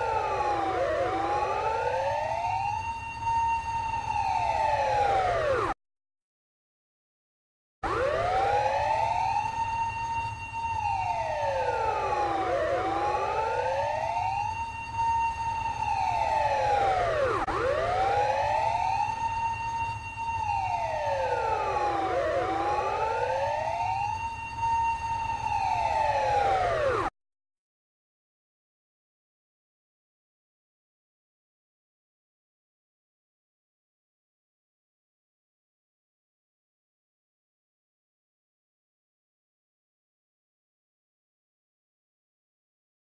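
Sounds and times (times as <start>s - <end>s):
ambulance siren wailing: 0.0s - 5.8s, 7.8s - 27.1s
second siren wail: 0.0s - 5.8s, 7.8s - 27.1s.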